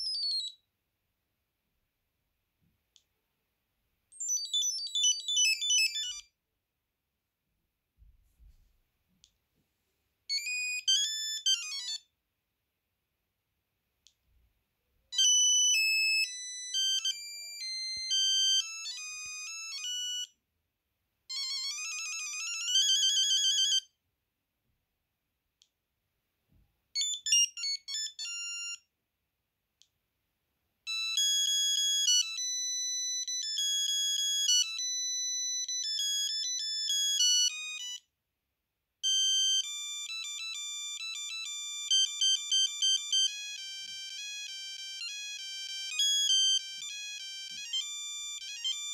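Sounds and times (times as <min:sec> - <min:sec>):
mobile phone ringtone melodies: 0:04.1 - 0:06.3, 0:10.3 - 0:12.1, 0:15.2 - 0:20.4, 0:21.3 - 0:23.9, 0:27.0 - 0:28.8, 0:30.9 - 0:38.1, 0:39.0 - 0:48.9.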